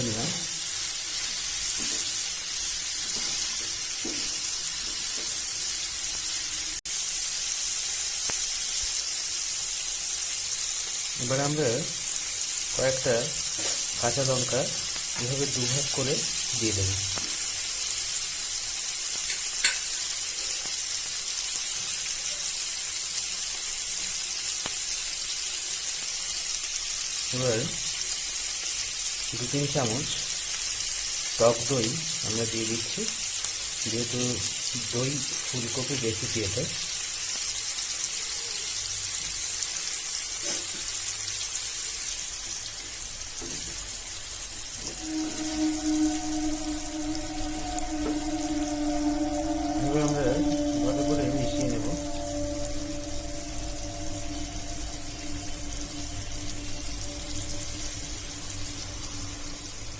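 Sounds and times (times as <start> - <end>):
vegetables sizzling in oil: 0.0 - 59.9
steady musical tone: 12.7 - 17.3, 44.7 - 59.9.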